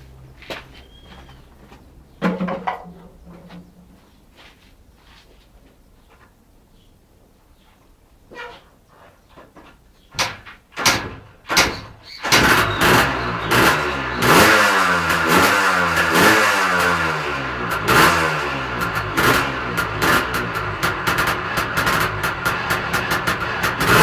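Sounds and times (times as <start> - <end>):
two-stroke motorcycle engine starting: 12.2 - 24.0.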